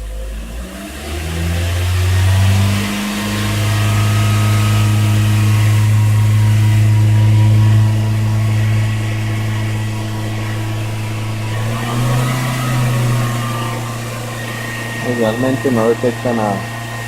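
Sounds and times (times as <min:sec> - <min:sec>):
car engine running steadily: 0:00.0 - 0:17.0.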